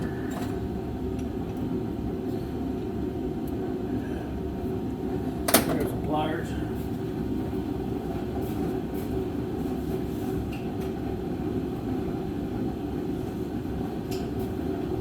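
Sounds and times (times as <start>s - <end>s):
space heater rumbling: 0.0s - 15.0s.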